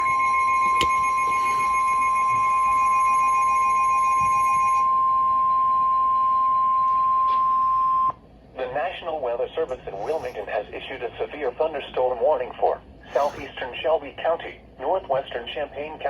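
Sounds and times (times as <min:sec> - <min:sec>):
high-pitched warning alarm tone: 0:00.0 - 0:08.1.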